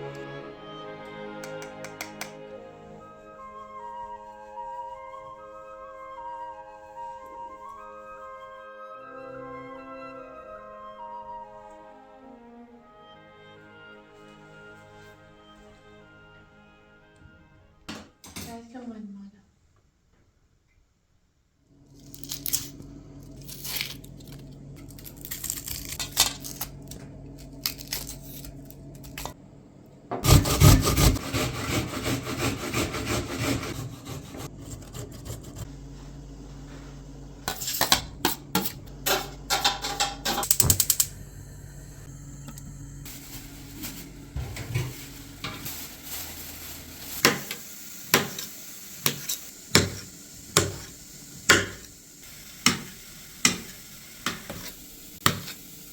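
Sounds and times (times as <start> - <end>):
steady low hum: 21.7 - 47.2
dishes and pots clinking: 37.5 - 41.1, 44.4 - 45.7.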